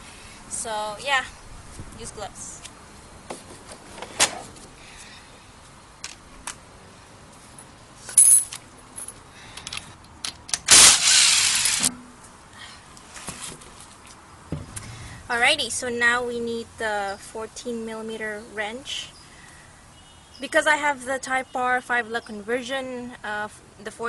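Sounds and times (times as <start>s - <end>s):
power tool burst: 10.7s - 11.9s.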